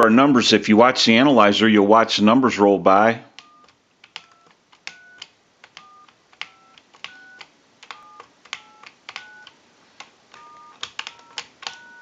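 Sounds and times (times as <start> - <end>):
touch-tone dialing beeps: 3.4 - 5.2, 5.8 - 7.4, 8.0 - 9.5, 10.4 - 12.0
keypad key clicks: 3.4 - 12.0.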